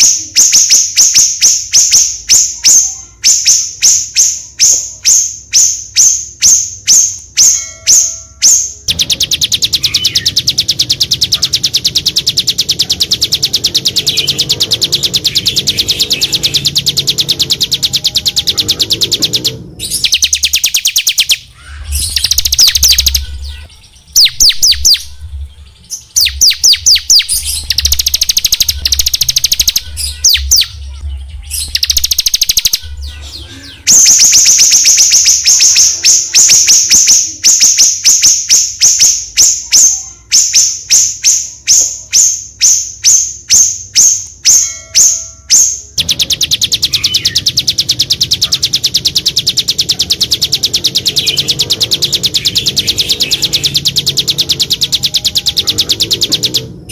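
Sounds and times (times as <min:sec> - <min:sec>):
small songbirds singing: 0:00.0 - 0:56.9
low hum: 0:07.7 - 0:20.5, 0:21.6 - 0:33.9.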